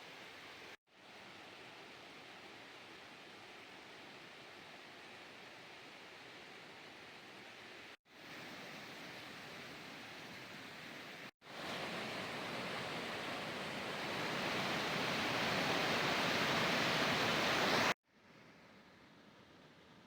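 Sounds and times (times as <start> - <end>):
waterfall rushing: 11.6 - 18.0.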